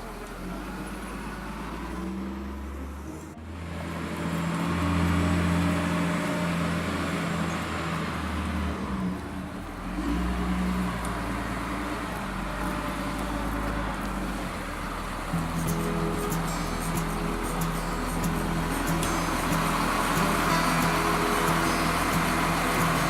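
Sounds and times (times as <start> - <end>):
vehicle engine running: 0.0 - 23.0.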